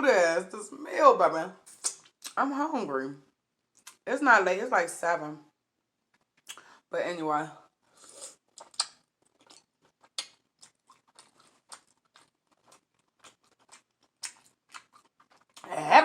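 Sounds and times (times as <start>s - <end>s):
person chewing with wet smacks: 1.7s - 2.4s, 6.2s - 6.7s, 8.0s - 15.7s.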